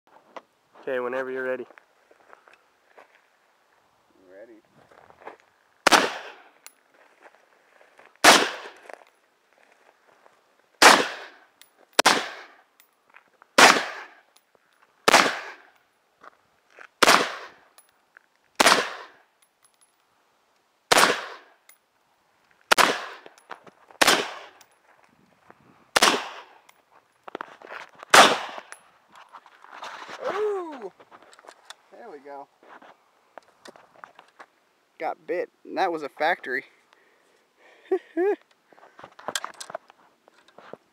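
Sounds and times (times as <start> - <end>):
rifle shots: 5.8 - 6.5, 8.2 - 8.8, 10.8 - 11.4, 12.0 - 12.6, 13.6 - 14.2, 15.1 - 15.6, 17.0 - 17.6, 18.6 - 19.2, 20.9 - 21.5, 22.7 - 23.2, 24.0 - 24.6, 26.0 - 26.6, 28.1 - 28.7.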